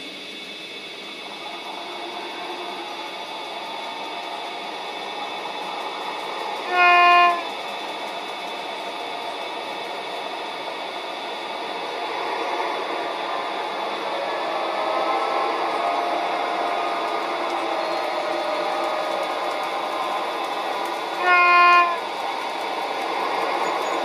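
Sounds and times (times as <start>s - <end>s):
diesel railcar engine sound: 0.0s - 24.0s
short horn blast: 6.7s - 7.4s.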